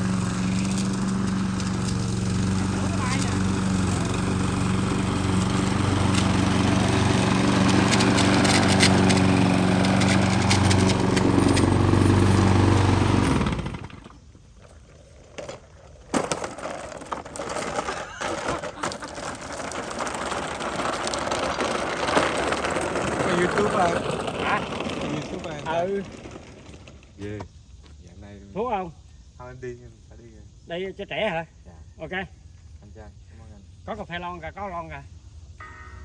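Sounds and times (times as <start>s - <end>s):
grass cutter petrol engine running: 0.0s - 27.2s.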